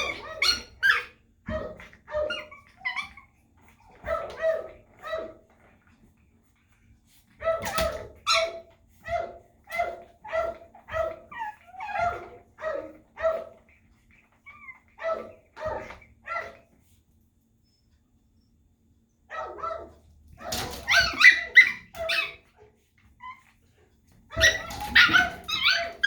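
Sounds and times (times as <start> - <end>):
dog barking: 4.0 - 5.4, 7.4 - 13.6, 15.0 - 16.6, 19.3 - 22.4, 24.3 - 26.0.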